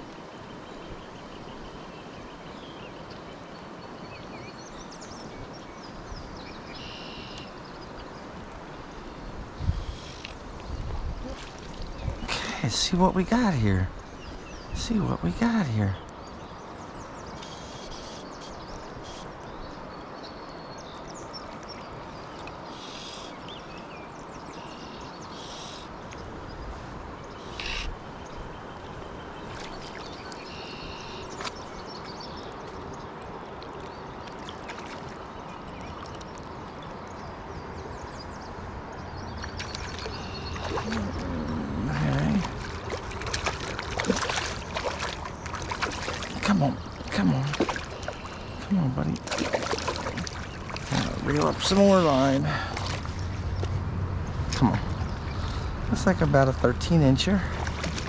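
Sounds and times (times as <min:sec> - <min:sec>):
small birds chirping: 0:00.0 - 0:58.0
river water rushing: 0:25.9 - 0:58.0.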